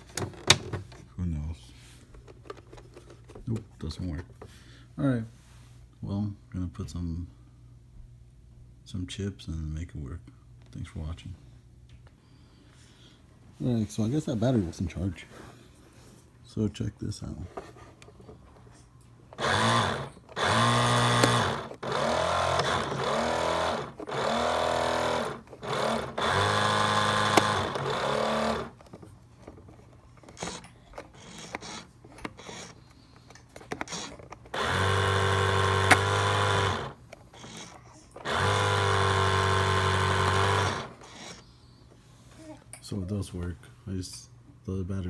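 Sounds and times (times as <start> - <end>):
electric motor whining: 19.4 - 28.8, 30.4 - 32.8, 33.8 - 41.5.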